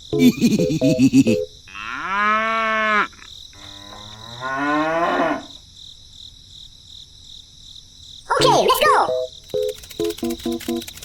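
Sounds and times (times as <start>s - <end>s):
cow mooing: 1.7s - 5.6s.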